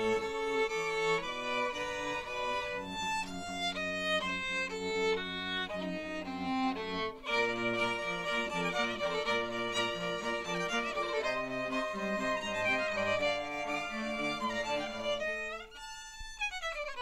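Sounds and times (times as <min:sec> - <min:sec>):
violin bowed notes: 0:00.0 - 0:17.0.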